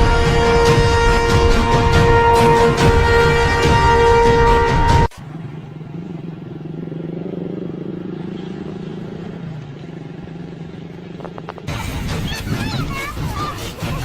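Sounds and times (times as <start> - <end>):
music: 0.0 - 5.1
vehicle engine droning: 0.0 - 14.0.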